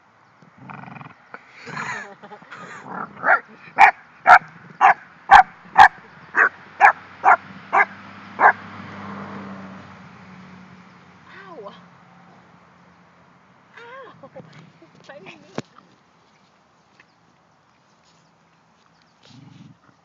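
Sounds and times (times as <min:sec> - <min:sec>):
dog yapping barks: 0:03.2 - 0:08.6.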